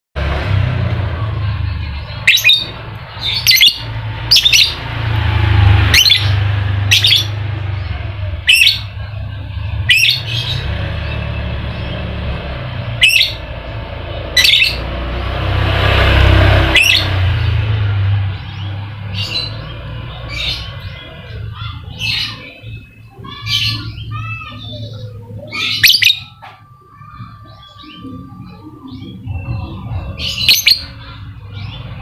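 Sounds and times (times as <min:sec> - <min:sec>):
lovebird chirping shrilly: 0:25.6 - 0:26.4.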